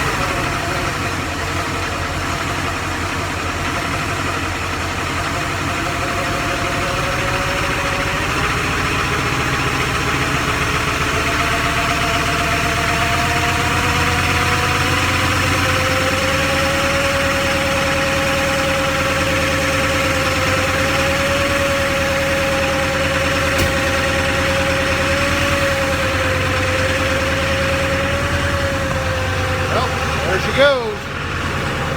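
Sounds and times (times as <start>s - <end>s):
diesel engine idling: 0.0s - 31.9s.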